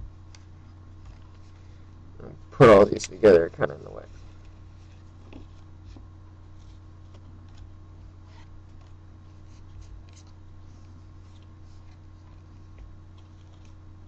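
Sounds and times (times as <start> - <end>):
steady low hum: 0.0 - 14.0
trading cards rustling: 2.9 - 14.0.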